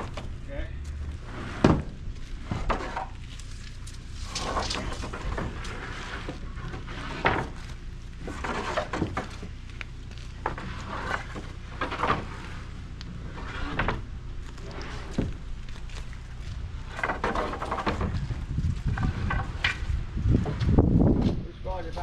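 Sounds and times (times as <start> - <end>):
steady low hum: 0.0 - 22.0
wooden boards knocking and clattering: 1.6 - 3.2, 16.9 - 18.3.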